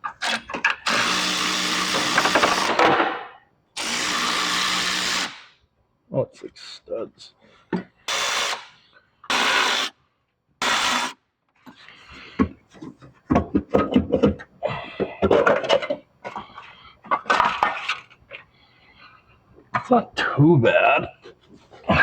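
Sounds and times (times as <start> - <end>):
cordless power tool running: 0.3 - 2.8, 3.8 - 5.5, 8.1 - 8.7, 9.3 - 9.9, 10.6 - 11.2.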